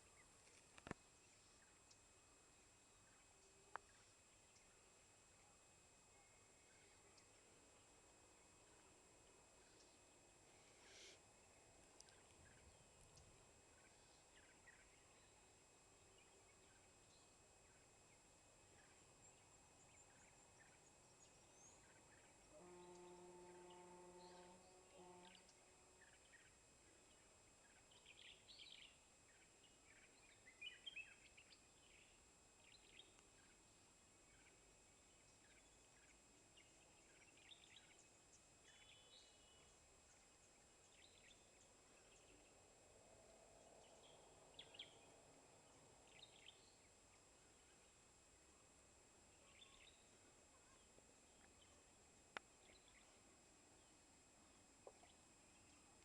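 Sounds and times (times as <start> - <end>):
faint bird chirps: 0.0 - 56.0
faint steady hiss: 0.0 - 56.0
steady droning tone: 1.2 - 28.0.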